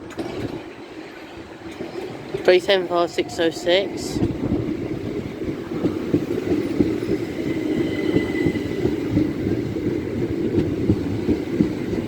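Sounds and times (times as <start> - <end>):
train wheels clattering over rails: 0.0 - 12.0
high wheel squeal: 6.5 - 9.6.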